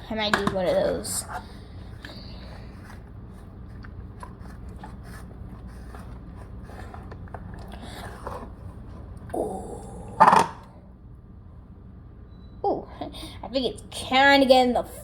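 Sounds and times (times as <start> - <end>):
slime being stirred: 0.1 - 9.4.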